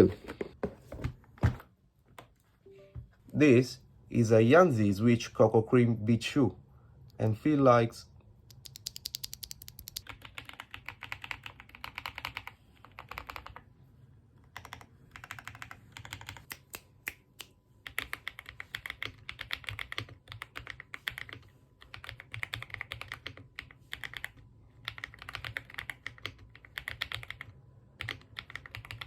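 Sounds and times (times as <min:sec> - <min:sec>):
mechanical keyboard typing: 0:08.5 - 0:13.6, 0:14.4 - 0:16.7, 0:17.8 - 0:29.0.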